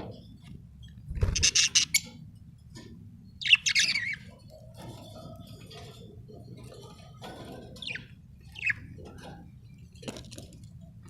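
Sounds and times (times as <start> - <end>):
budgerigar chirping: 1.2 - 2.2, 3.4 - 4.3, 7.8 - 8.9.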